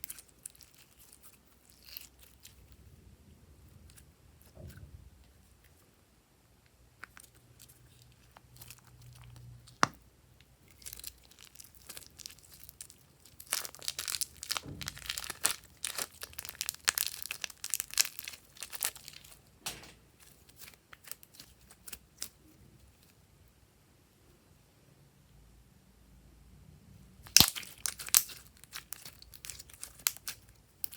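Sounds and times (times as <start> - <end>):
slime crackling and popping: 10.6 - 22.4, 27.2 - 30.9.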